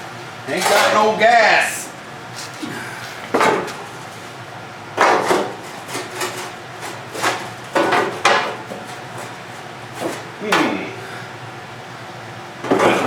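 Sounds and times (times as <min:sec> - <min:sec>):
metal tools clanking: 0:00.5 - 0:01.2.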